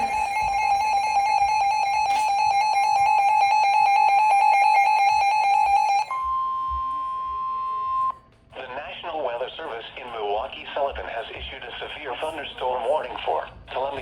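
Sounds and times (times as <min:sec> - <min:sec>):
steady alarm tone: 0:00.0 - 0:08.2.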